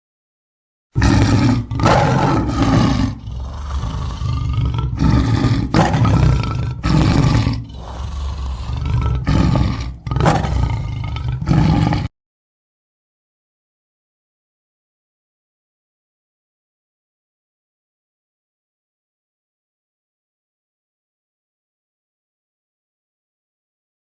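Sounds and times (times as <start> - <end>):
tiger roaring: 1.0 - 12.1.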